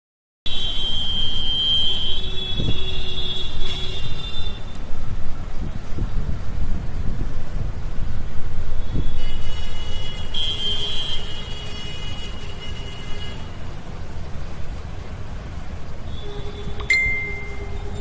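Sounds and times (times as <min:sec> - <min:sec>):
traffic rumble: 0:00.5 - 0:18.0
high steady tone: 0:16.7 - 0:18.0.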